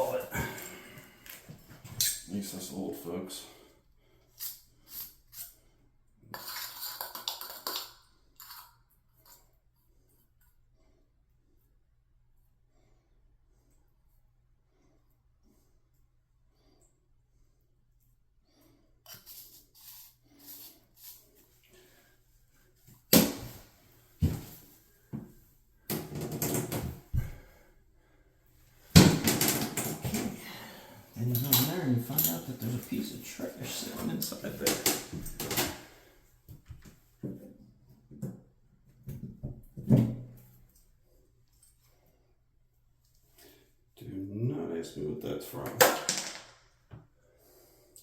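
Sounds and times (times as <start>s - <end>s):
knocks and clunks on plumbing parts: 25.9s - 27.5s, 28.9s - 30.6s, 34.6s - 35.9s.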